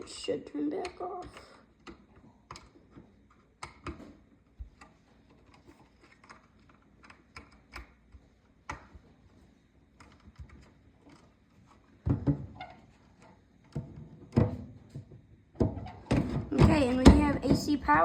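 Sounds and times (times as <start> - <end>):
knocks and thumps: 12.0 - 12.6, 13.7 - 18.0.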